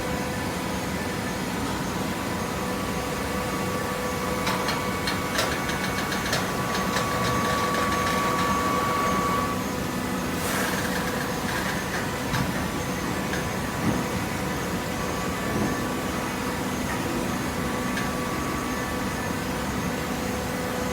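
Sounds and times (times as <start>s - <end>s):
machine whine: 0.1s - 12.2s.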